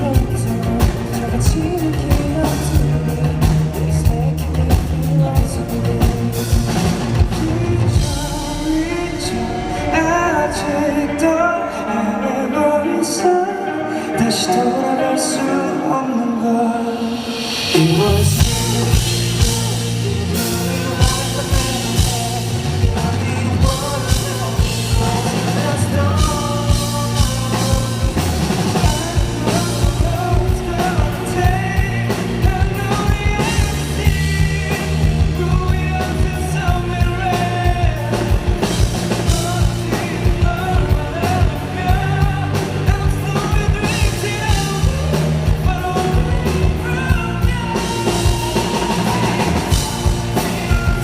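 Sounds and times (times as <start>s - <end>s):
live rock band playing: 0.0s - 51.0s
person singing: 0.0s - 51.0s.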